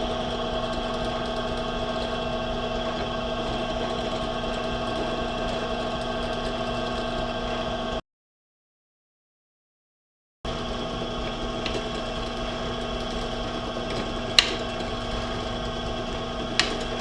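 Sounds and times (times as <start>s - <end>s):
electric drill drilling plastic: 10.6s - 17.0s.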